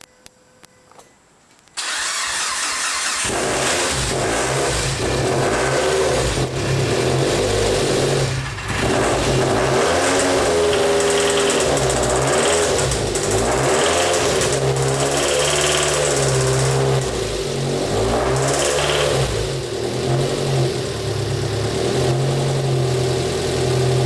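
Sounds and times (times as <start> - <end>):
starter motor cranking: 1.8 - 4.1
car engine idling: 1.8 - 18.0, 19.2 - 24.0.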